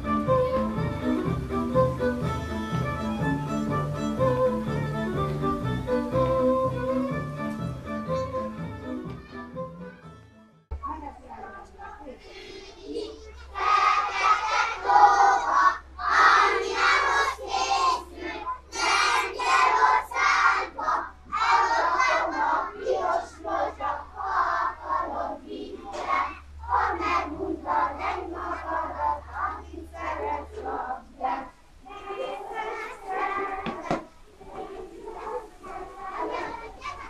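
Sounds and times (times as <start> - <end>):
children singing together: 12.4 - 37.0.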